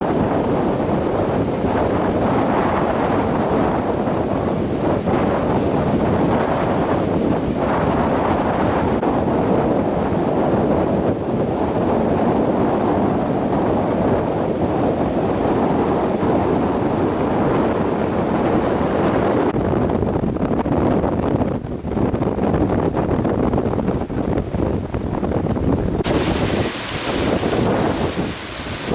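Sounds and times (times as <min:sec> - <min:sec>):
strong wind on microphone: 0:00.0 - 0:28.9
surf breaking on beach: 0:26.0 - 0:28.9.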